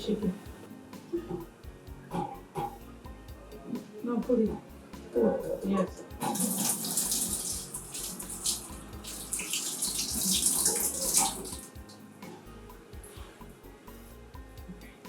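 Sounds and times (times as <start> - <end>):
water pouring into a pot: 6.2 - 11.8.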